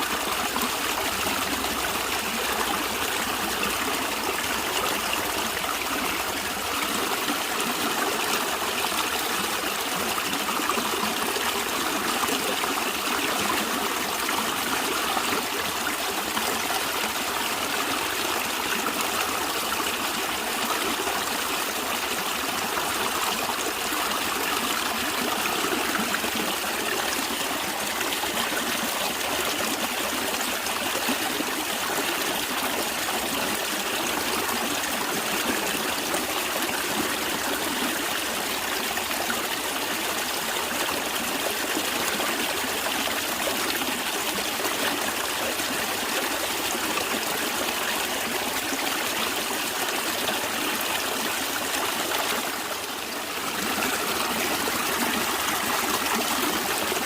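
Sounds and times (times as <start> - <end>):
stream water trickling: 0.0 - 57.0.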